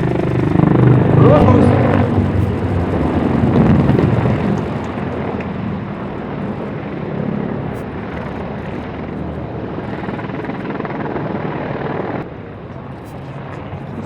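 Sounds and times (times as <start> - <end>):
helicopters droning in flight: 0.0 - 14.0.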